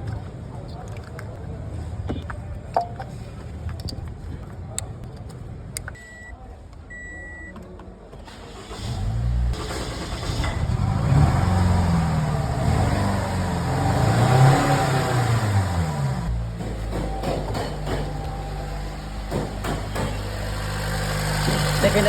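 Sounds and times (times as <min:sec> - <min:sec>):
car engine starting and running: 0:08.2 - 0:16.6, 0:18.2 - 0:22.0.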